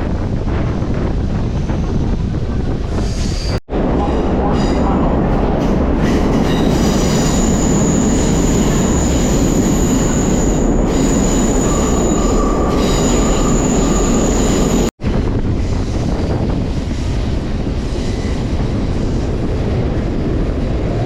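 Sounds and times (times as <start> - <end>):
train wheels rumbling on rail: 0.0 - 21.0
high wheel squeal: 6.0 - 14.9
lower wheel squeal: 6.5 - 14.9.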